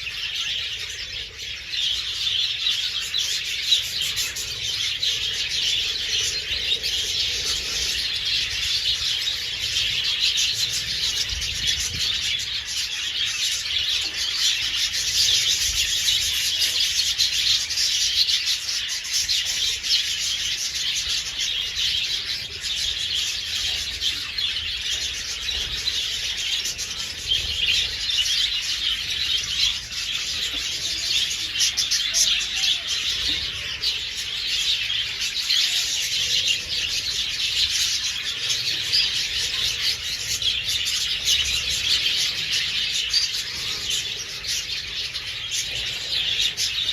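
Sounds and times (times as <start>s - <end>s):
budgerigars chattering: 0.0s - 46.9s.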